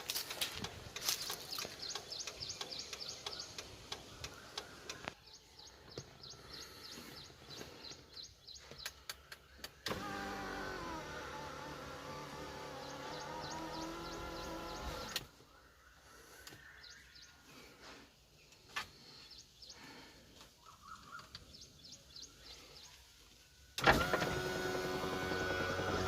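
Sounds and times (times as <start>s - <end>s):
power window motor: 9.8s - 15.3s, 23.8s - 26.0s.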